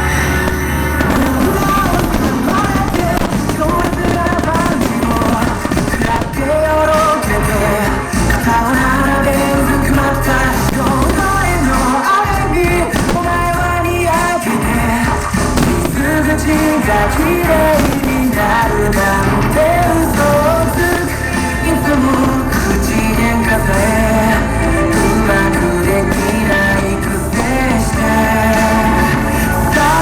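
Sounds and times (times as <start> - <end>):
pop-rock song over loudspeakers: 0.0 - 30.0.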